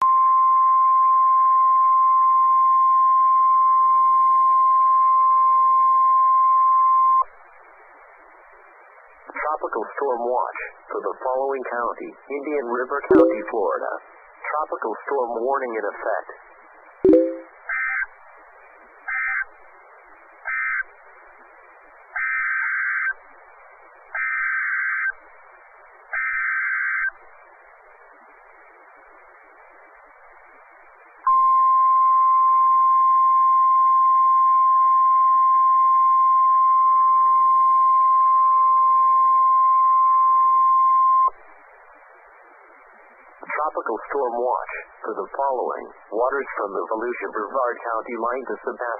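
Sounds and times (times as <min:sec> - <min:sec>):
radio hiss: 0:07.3 - 0:31.2, 0:41.2 - 0:48.9
alert data tone bursts: 0:13.1 - 0:13.6, 0:17.1 - 0:17.5
steady radio alarm tone: 0:13.1 - 0:13.9.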